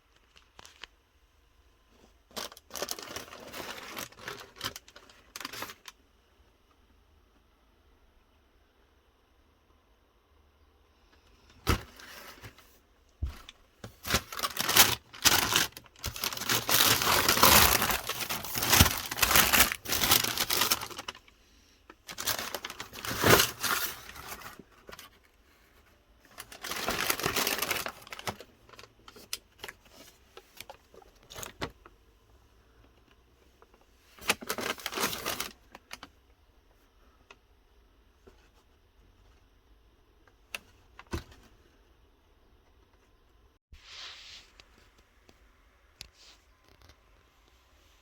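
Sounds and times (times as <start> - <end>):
packing paper crinkling: 2.3 - 6.0, 13.2 - 21.3, 22.0 - 25.2, 26.3 - 31.7, 34.2 - 36.1.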